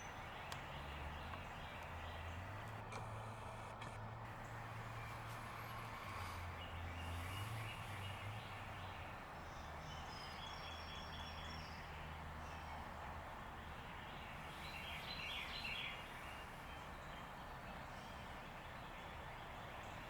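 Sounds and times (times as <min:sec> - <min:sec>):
bird chirps: 0:00.0 - 0:20.0
faint bird calls: 0:00.0 - 0:20.0
steady hiss: 0:04.2 - 0:20.0.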